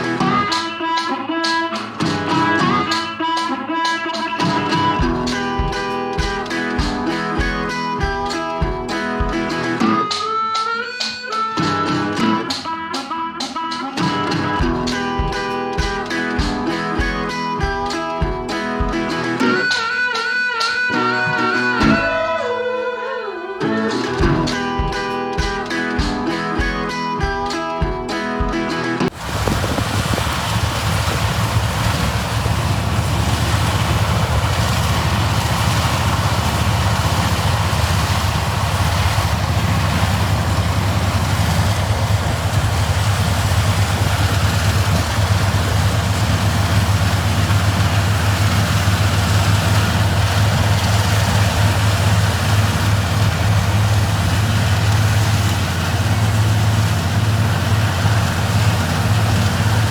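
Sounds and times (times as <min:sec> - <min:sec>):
machinery engine droning: 0:29.1 - 0:59.9.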